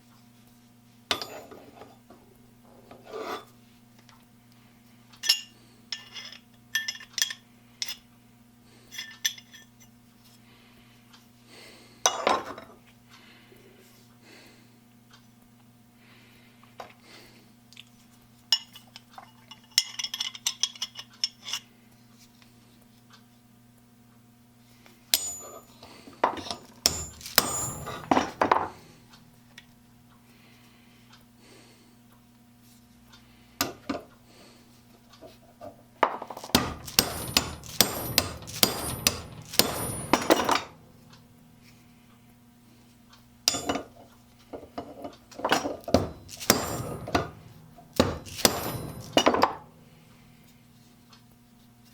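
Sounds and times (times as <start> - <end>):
low electrical hum: 0.0 - 51.9
hard objects clinking: 26.4 - 28.8, 36.3 - 41.2, 45.6 - 49.7.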